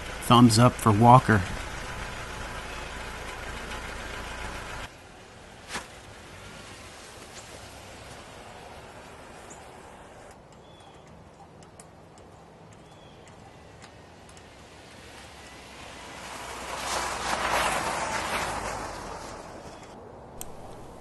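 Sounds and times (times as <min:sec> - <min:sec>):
faint bird chirps: 0:10.5 - 0:11.9.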